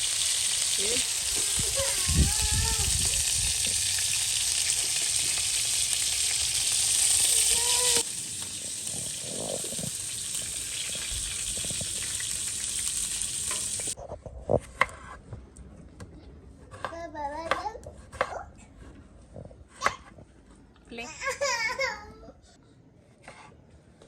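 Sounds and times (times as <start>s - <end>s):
food sizzling in hot oil: 0.0s - 14.0s.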